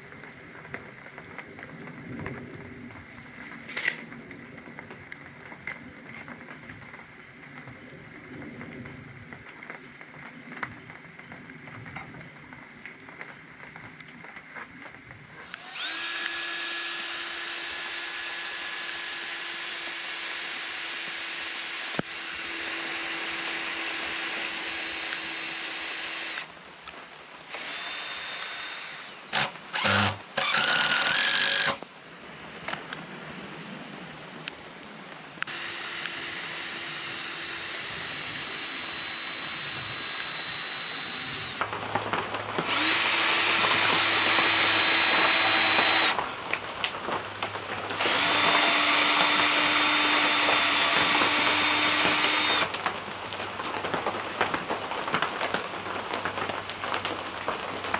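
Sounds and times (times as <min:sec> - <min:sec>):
power tool motor running: 0:15.4 - 0:26.5, 0:27.5 - 0:31.8, 0:35.4 - 0:46.4, 0:47.9 - 0:52.9.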